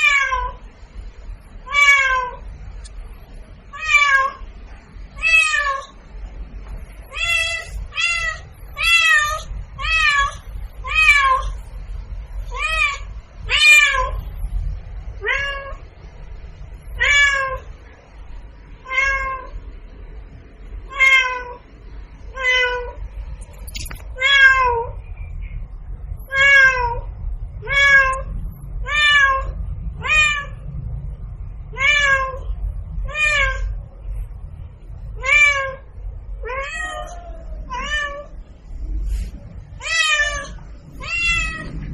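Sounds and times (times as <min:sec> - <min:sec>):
cat meowing: 0:00.0 - 0:00.6, 0:01.6 - 0:02.4, 0:03.7 - 0:04.5, 0:05.2 - 0:06.0, 0:07.1 - 0:11.6, 0:12.5 - 0:14.3, 0:15.2 - 0:15.8, 0:16.9 - 0:17.7, 0:18.8 - 0:19.6, 0:20.9 - 0:21.6, 0:22.3 - 0:23.0, 0:24.2 - 0:25.0, 0:26.3 - 0:30.6, 0:31.7 - 0:33.8, 0:35.2 - 0:38.4, 0:39.8 - 0:41.9
low steady hum: 0:00.0 - 0:41.9.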